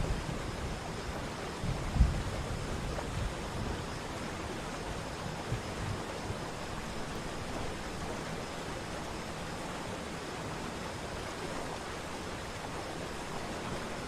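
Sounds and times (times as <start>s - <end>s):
wind buffeting microphone: 0.0s - 7.6s.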